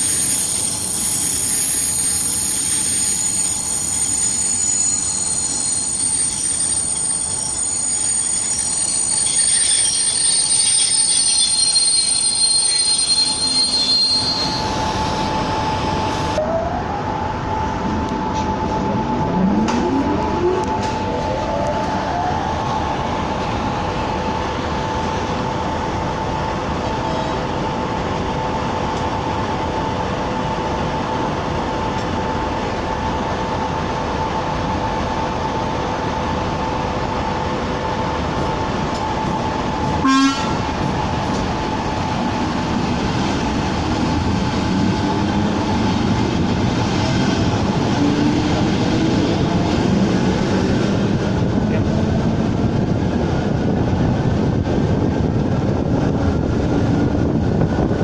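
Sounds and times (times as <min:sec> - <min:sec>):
electric train rumbling: 0:00.0 - 0:58.0
rising motor tones: 0:18.9 - 0:22.0
train horn blast: 0:40.0 - 0:40.7.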